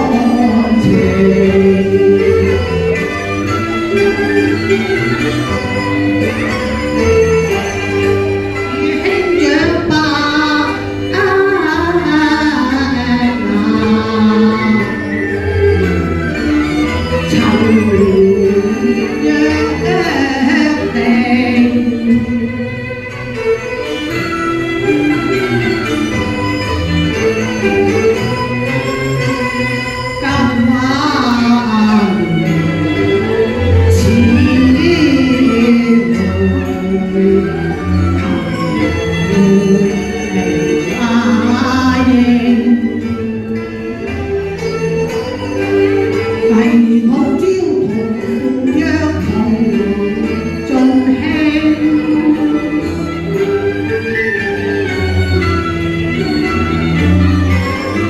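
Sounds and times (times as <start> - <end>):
woman singing opera: 0.0 - 2.6, 8.9 - 16.6, 17.2 - 22.4, 33.9 - 42.9, 46.4 - 52.7
instrumental accompaniment: 0.0 - 58.0.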